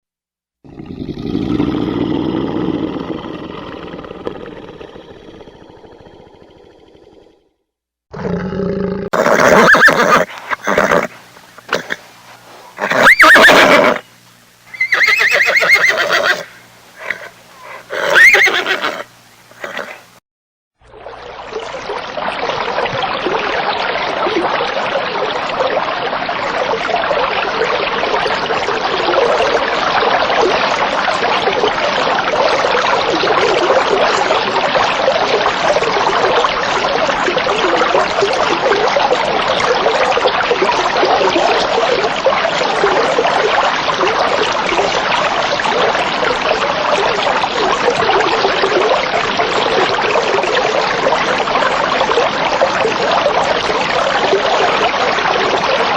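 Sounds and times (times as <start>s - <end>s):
running water rushing: 9.2s - 20.2s, 21.2s - 55.9s.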